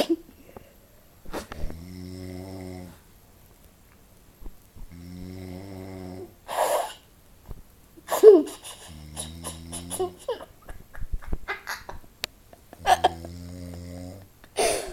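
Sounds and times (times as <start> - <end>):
low rattling snores: 1.3 - 3.1, 4.8 - 6.4, 12.8 - 14.3.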